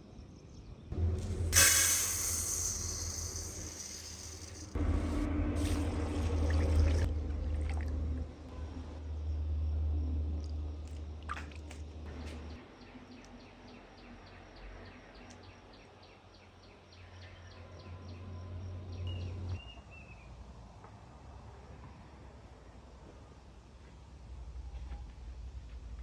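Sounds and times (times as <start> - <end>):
low rumble: 0.9 - 12.6.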